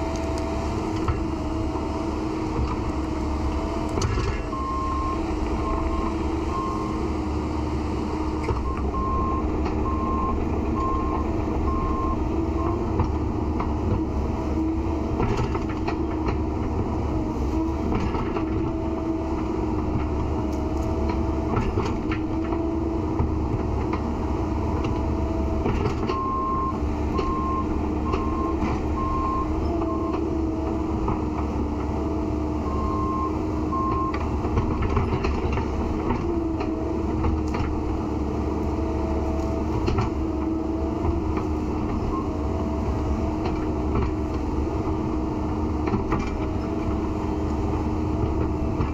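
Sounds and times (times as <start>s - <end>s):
diesel engine running: 0.0s - 48.9s
reversing alarm beeps: 4.3s - 7.1s, 8.6s - 12.8s, 26.1s - 30.2s, 32.6s - 34.2s.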